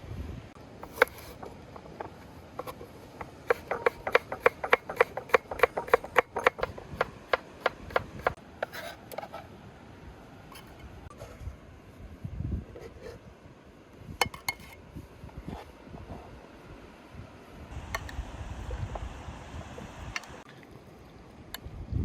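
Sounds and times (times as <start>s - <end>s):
chopping on wooden board: 3.5s - 8.4s.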